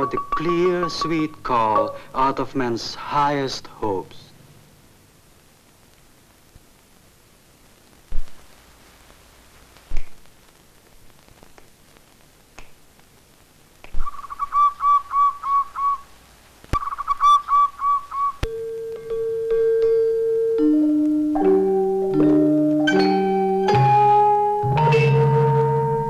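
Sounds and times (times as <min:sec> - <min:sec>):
songbird whistling: 0:14.0 - 0:16.1, 0:16.8 - 0:18.5.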